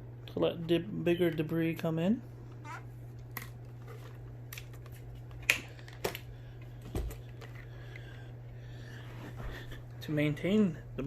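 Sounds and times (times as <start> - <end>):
low steady hum: 0.0 - 11.0.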